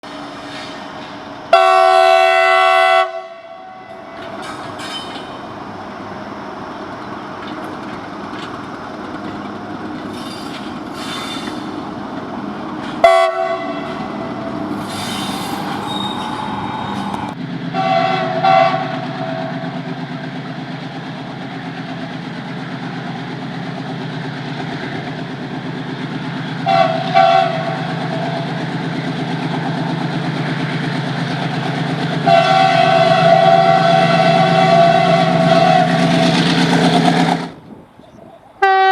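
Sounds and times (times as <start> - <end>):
moving train rumble and clatter: 0.0 - 38.9
locomotive horn blasts: 1.5 - 4.6, 13.0 - 19.6, 26.6 - 28.3, 32.2 - 36.4, 38.6 - 38.9.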